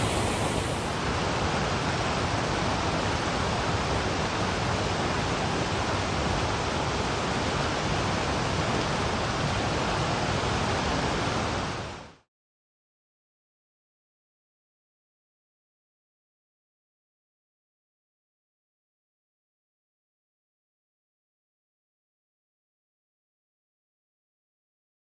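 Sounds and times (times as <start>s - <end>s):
waterfall and river rushing: 0.0s - 1.5s.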